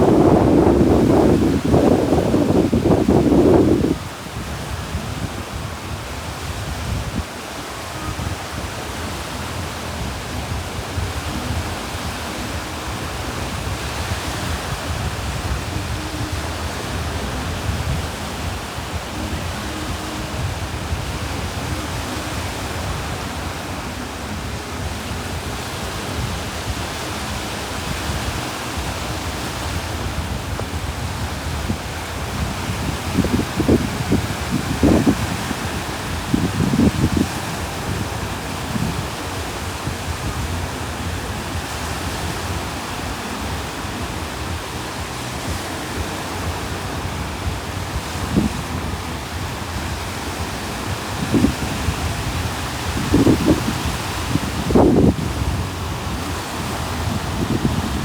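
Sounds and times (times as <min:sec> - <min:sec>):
sea waves washing ashore: 0:00.0 - 0:58.0.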